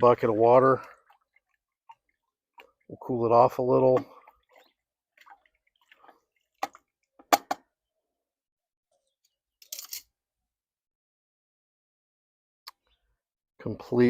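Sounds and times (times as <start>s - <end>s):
water dripping and sloshing: 0.0s - 7.5s.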